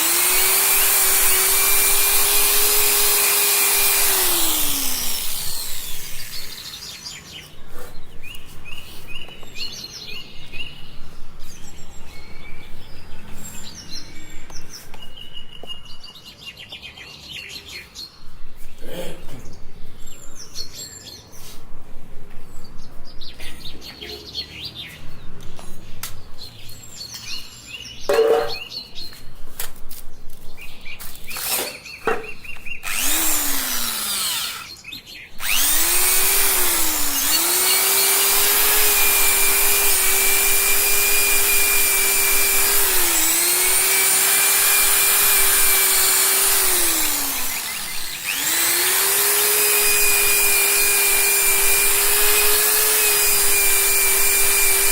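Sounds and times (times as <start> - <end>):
power tool motor whine: 0.0 - 7.0, 31.3 - 31.7, 32.8 - 34.8, 35.4 - 54.9.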